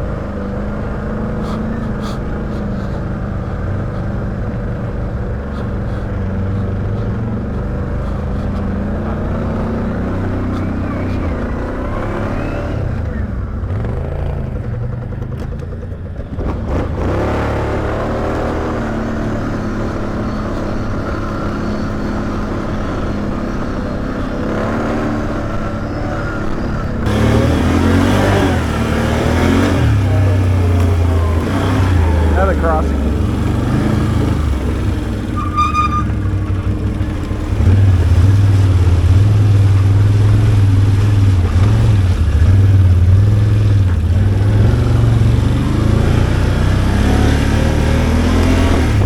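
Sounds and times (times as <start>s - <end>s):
atv engine running: 0.0s - 49.0s.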